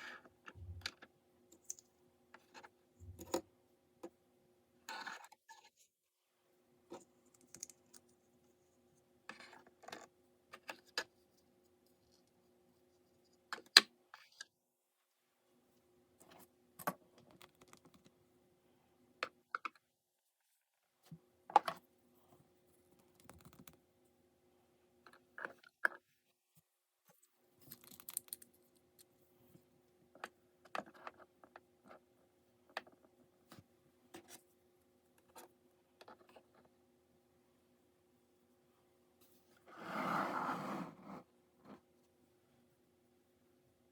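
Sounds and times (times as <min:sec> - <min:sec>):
small objects clicking and tapping: 0:27.6 - 0:29.1.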